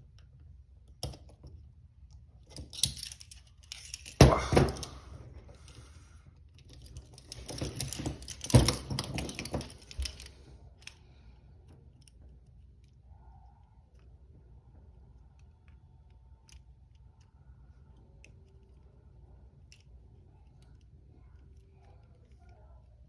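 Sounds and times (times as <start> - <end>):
handcuff chains clinking: 2.5 - 5.8, 6.6 - 11.0.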